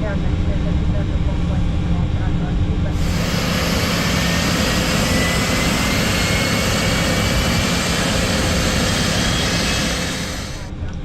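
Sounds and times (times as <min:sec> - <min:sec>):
jet engine whine rising: 0:02.8 - 0:10.7
loud air hiss: 0:03.0 - 0:10.7.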